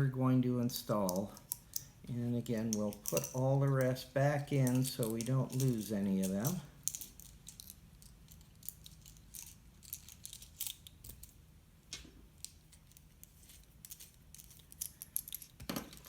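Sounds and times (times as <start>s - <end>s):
screwdriver bits clicking: 2.6s - 4.0s, 4.6s - 11.3s.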